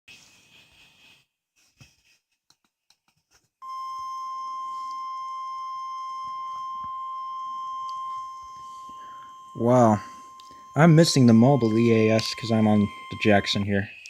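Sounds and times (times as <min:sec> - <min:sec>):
steady high alert beep: 0:03.6 - 0:14.0.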